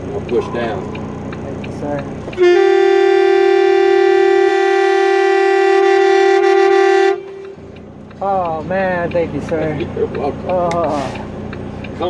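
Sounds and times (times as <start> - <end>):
truck air horn blast: 2.3 - 7.8.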